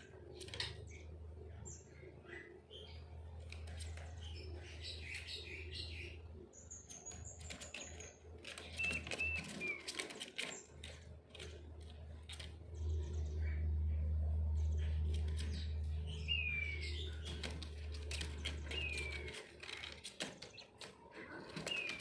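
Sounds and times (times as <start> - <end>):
clicks and scratching: 0.2 - 1.1, 3.4 - 5.3, 6.9 - 13.6, 16.8 - 22.0
bird chirps: 3.8 - 11.0, 14.6 - 22.0
steady low hum: 10.6 - 20.0.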